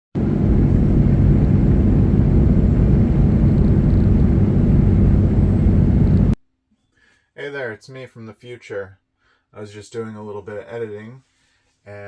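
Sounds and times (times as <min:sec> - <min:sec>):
vehicle rumble: 0:00.2 - 0:06.4.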